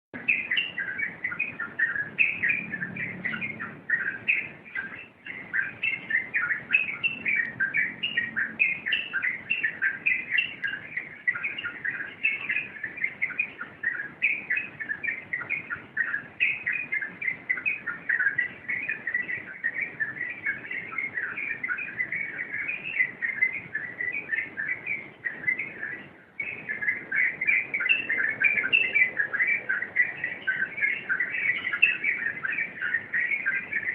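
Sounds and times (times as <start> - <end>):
bulbul singing chattering notes: 0.2 - 24.5.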